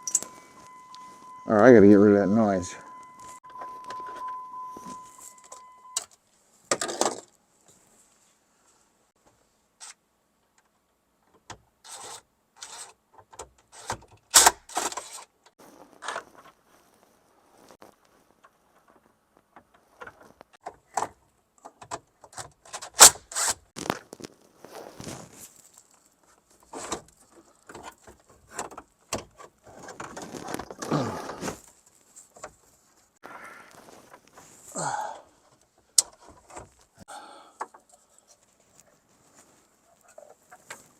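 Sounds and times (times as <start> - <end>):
clicks and scrapes of parts handled: 0.0 - 1.3, 11.3 - 16.6
high electronic beep: 0.0 - 6.0.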